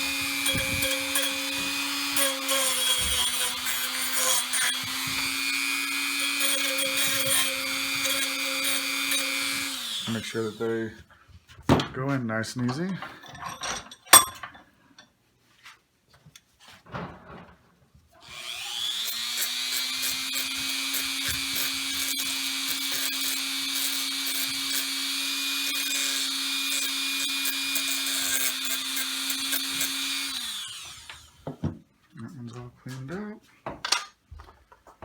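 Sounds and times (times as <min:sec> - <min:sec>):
small power tool grinding: 0:00.0 - 0:10.9, 0:18.2 - 0:31.4.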